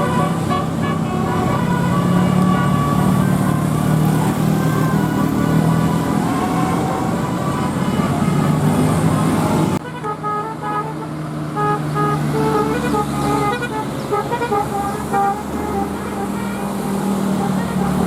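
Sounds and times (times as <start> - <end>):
musical air horn playing a tune: 0.0 - 4.9, 9.8 - 18.0
bus engine running: 0.0 - 18.0.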